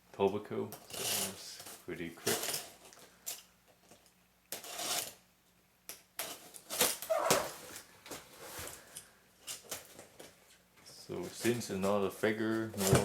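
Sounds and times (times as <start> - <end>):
packaging rustling and scraping: 6.2 - 13.0.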